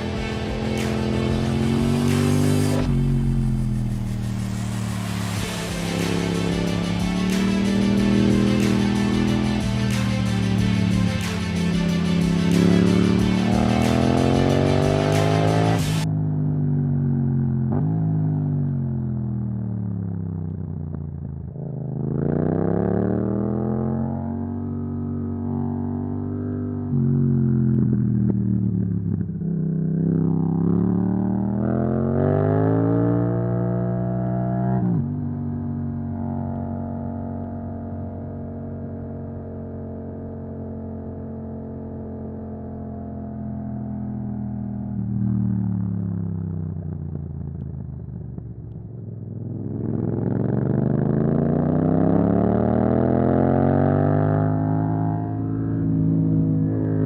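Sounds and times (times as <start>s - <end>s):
motorcycle engine accelerating: 0.0s - 57.0s.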